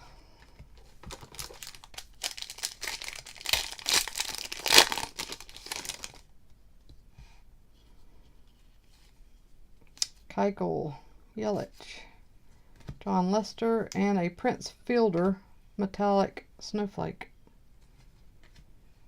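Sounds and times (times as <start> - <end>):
wrapper tearing and crinkling: 1.1 - 6.2.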